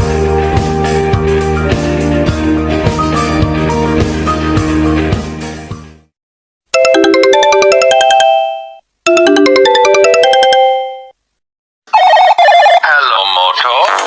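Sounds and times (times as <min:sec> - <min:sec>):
polyphonic ringtone melody: 0:06.7 - 0:11.2, 0:11.9 - 0:12.8.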